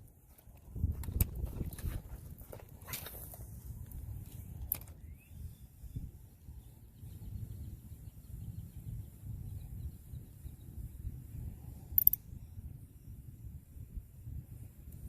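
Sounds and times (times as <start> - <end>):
wind rumble on microphone: 0.0 - 15.0
small ticks: 3.2 - 5.0, 11.8 - 12.3
sharp click: 11.9 - 12.2.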